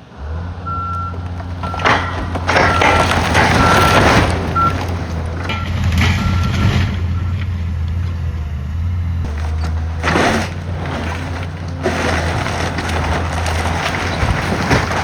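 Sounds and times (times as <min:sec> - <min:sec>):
diesel engine running: 0:00.0 - 0:15.0
debris crunching: 0:00.4 - 0:15.0
backup alarm beeping: 0:00.7 - 0:07.4.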